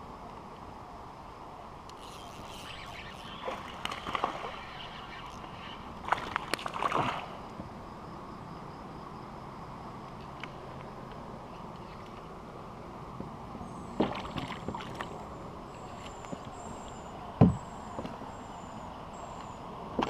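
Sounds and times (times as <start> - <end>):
water splashing against kayak: 2.0 - 7.4, 14.0 - 17.6.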